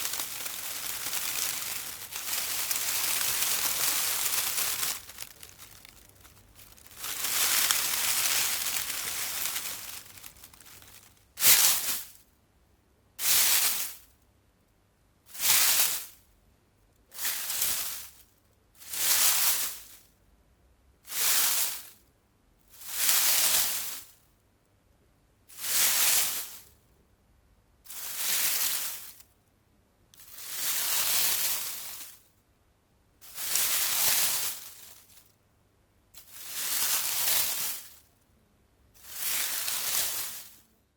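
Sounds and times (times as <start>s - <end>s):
bush leaves and twigs rustling: 0.0s - 12.2s, 33.2s - 35.2s, 36.2s - 38.0s, 39.0s - 40.6s.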